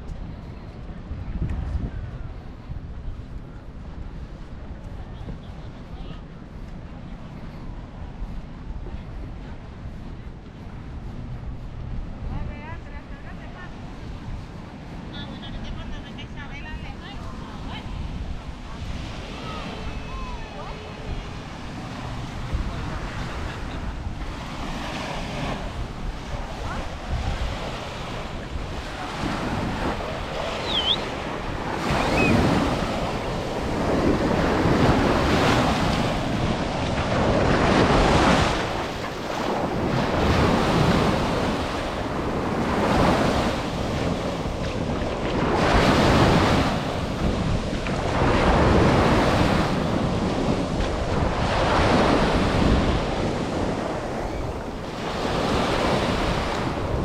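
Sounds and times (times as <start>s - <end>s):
wind buffeting microphone: 0.0s - 57.0s
ocean surf breaking: 14.8s - 57.0s.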